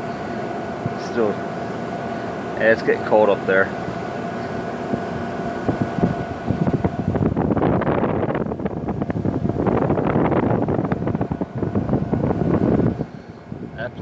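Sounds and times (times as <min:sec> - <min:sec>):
air conditioner running: 0:00.0 - 0:14.0
air blowing across microphone: 0:04.9 - 0:14.0.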